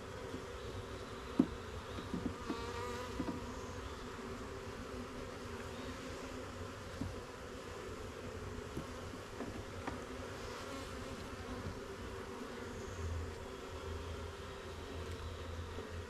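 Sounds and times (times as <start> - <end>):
honeybees buzzing: 0.0 - 16.0
faint clicks of hive frames: 1.2 - 3.9, 5.4 - 6.1, 8.2 - 13.6, 14.8 - 16.0.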